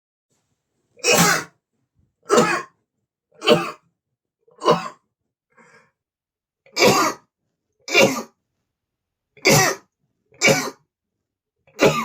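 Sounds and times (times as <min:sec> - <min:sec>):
man sneezing: 0:01.0 - 0:01.5, 0:02.3 - 0:02.7.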